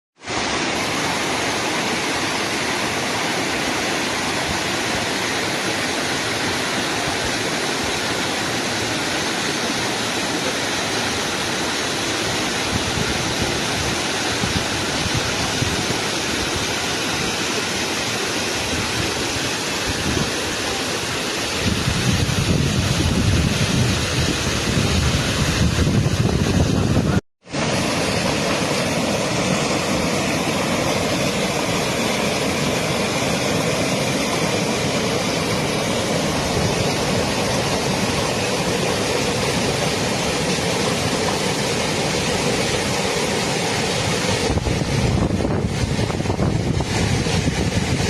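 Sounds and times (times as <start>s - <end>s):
river water flowing: 0.2s - 48.0s
wind on microphone: 12.6s - 17.4s, 18.6s - 20.6s, 21.4s - 48.0s.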